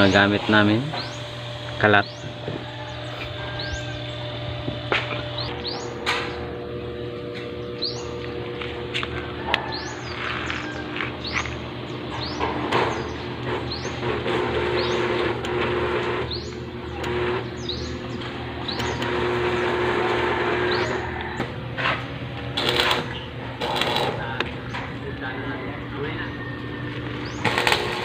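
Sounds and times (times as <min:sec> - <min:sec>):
bird chirping: 0:05.1 - 0:06.5, 0:07.5 - 0:08.4, 0:09.6 - 0:14.0, 0:14.7 - 0:15.2, 0:16.3 - 0:19.7, 0:26.1 - 0:27.6
arc welding crackling hiss: 0:22.5 - 0:24.3, 0:27.4 - 0:28.0.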